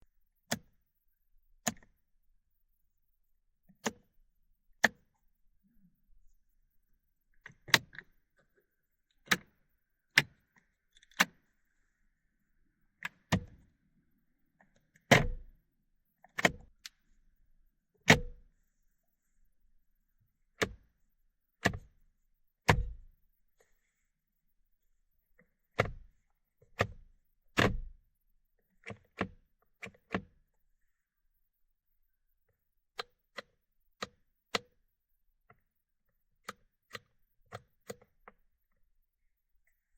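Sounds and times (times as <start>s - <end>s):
car dashboard button clicks: 18.1s - 18.4s.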